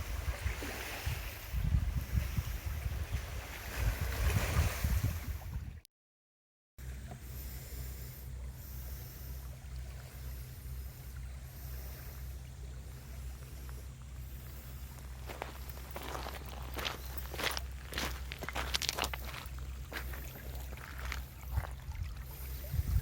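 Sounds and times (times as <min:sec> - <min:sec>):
sea surf: 0:00.0 - 0:05.4
steady low rumble: 0:00.0 - 0:05.8, 0:06.8 - 0:23.0
wind buffeting microphone: 0:00.0 - 0:05.8, 0:12.6 - 0:23.0.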